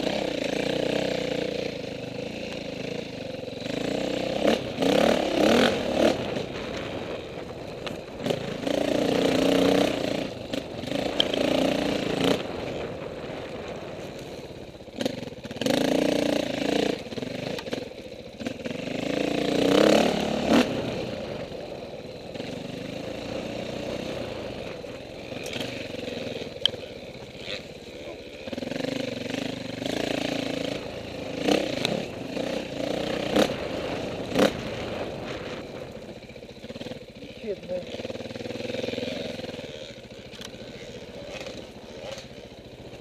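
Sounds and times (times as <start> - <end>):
dirt bike engine revving: 0.0 - 43.0
knocks and clatter from bike: 25.3 - 25.9.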